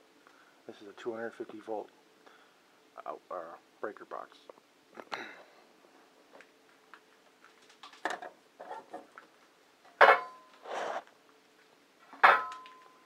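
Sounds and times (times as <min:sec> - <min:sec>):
metal box clanking and rattling: 0:12.2 - 0:12.8.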